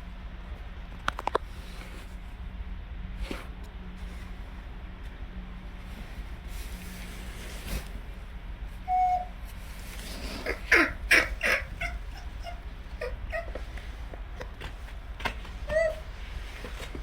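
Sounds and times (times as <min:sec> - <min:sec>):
baby monkey squeaky calls: 0:10.2 - 0:13.7, 0:15.7 - 0:16.0
baby monkey short peep: 0:10.3 - 0:13.7.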